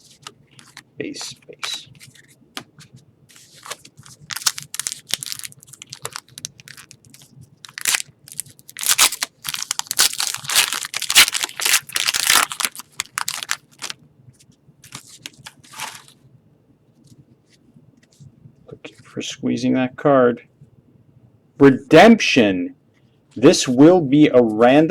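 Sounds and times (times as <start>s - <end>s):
foil wrapper crinkling and tearing: 3.5s - 14.0s, 14.8s - 16.1s.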